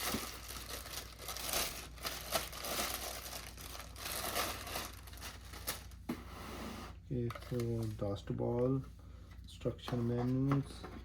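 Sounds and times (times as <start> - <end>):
plastic packaging crinkling: 0.0 - 6.0.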